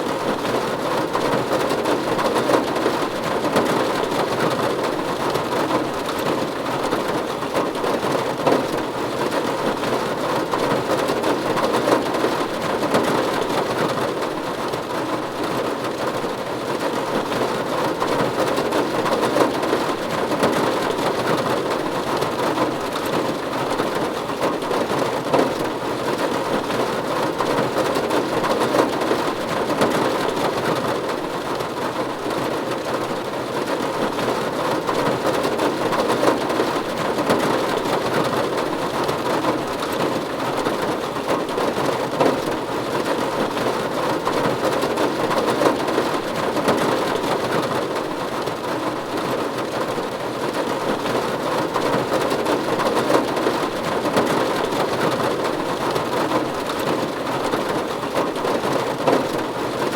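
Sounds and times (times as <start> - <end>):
rain on a roof: 0.0 - 59.9.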